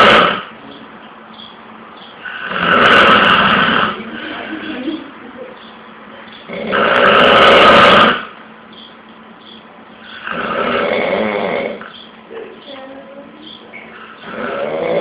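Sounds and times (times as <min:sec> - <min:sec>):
person snoring loudly: 0:00.0 - 0:00.5, 0:02.2 - 0:04.2, 0:06.5 - 0:08.3, 0:10.2 - 0:11.8, 0:14.2 - 0:15.0.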